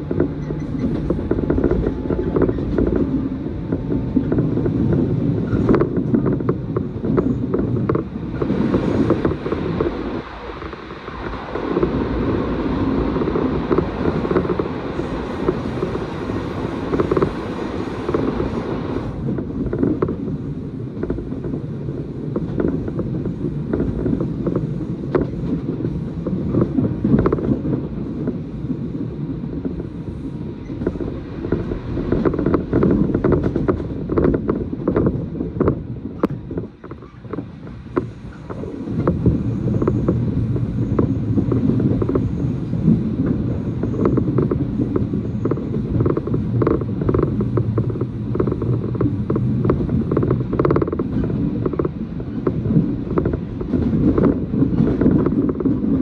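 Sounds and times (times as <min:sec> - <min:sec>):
track clicks and knocks: 0:00.0 - 0:12.0, 0:13.2 - 0:28.4, 0:30.6 - 0:42.4
train wheels rumbling on rails: 0:00.0 - 0:56.0.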